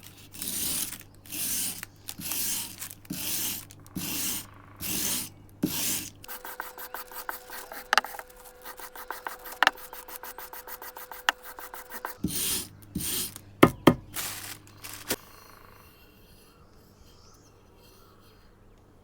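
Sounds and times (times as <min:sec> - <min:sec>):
hand tool scraping: 0:00.0 - 0:15.2.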